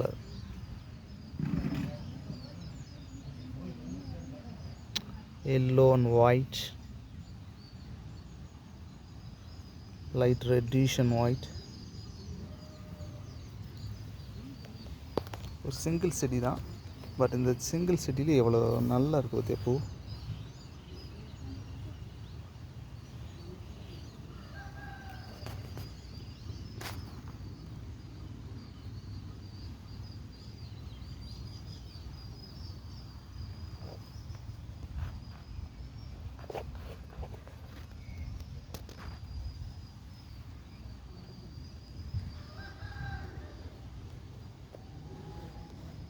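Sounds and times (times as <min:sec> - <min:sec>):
rooster crowing: 0:24.3 - 0:25.8, 0:42.4 - 0:43.9.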